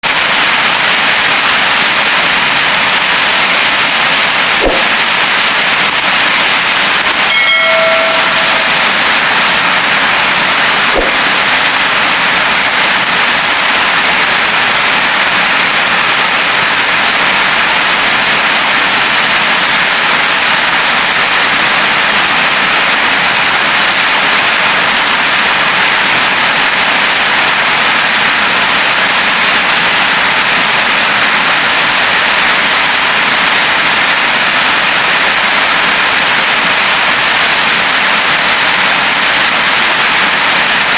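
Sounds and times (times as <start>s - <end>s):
heavy rain: 0.0s - 40.9s
short pitched tone: 7.1s - 9.4s.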